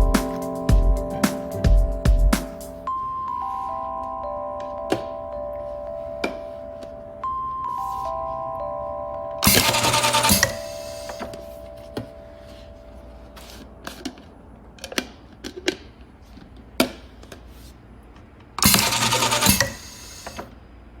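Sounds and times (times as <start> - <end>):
capping machine burst of noise: 18.6 - 20.4.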